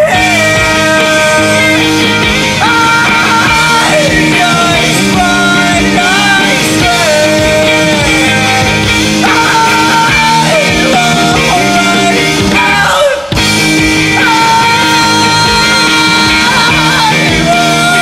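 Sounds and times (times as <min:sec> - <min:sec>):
rock song with sung vocal: 0:00.0 - 0:18.0.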